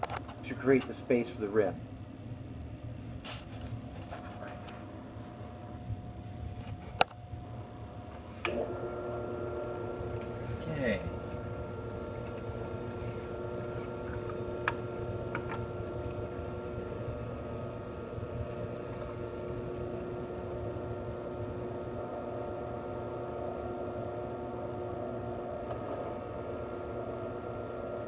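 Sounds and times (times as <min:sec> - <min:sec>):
drill press motor humming: 0:00.0 - 0:28.0.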